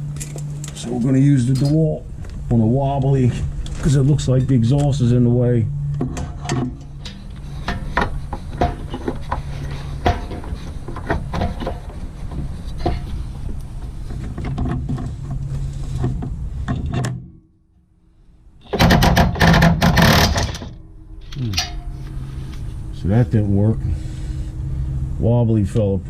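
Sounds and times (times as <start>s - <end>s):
impact wrench hammering: 18.7s - 20.7s.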